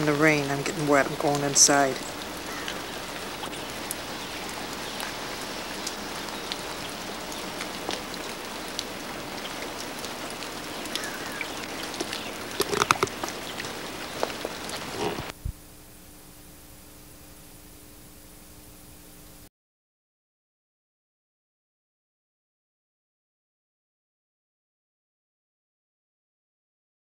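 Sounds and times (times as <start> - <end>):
drops ticking close by: 0.0 - 15.3
faint steady hiss: 0.0 - 19.5
steady rain falling: 0.0 - 19.5.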